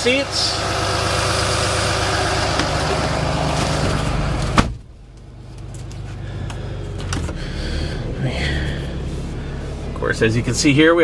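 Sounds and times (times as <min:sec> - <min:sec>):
diesel engine idling: 0:00.0 - 0:11.0
truck door shutting: 0:02.5 - 0:05.0.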